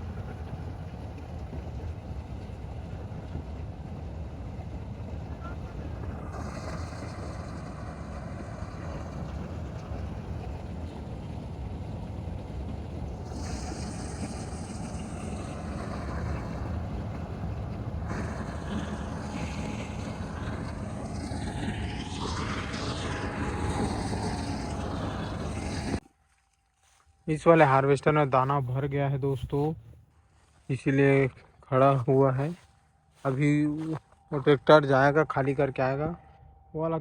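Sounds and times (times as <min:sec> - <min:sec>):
diesel engine rumbling: 0:00.0 - 0:26.0.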